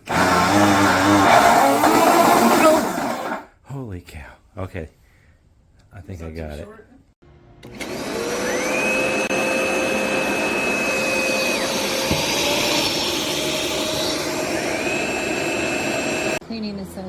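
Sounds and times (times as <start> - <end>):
carpet cleaner motor whine: 0.0 - 3.4, 7.6 - 16.5.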